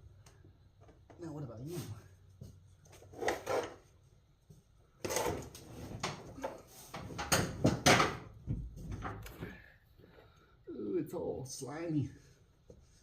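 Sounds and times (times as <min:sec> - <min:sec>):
wiring rustling and scraping: 0:02.6 - 0:04.1, 0:04.9 - 0:09.5.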